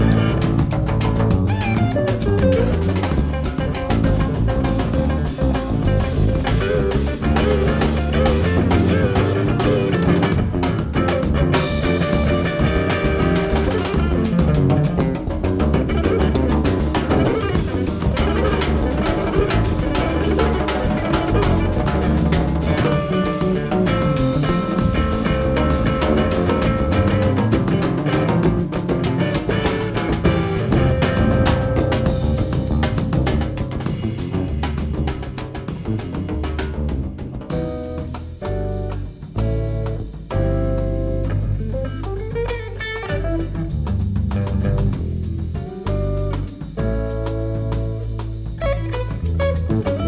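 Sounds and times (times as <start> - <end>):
busy drum kit: 0.0 - 50.0
electric guitar: 0.0 - 50.0.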